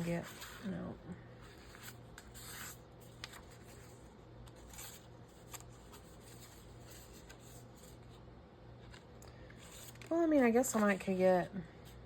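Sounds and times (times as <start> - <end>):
paper rustling and shuffling: 1.4 - 11.1.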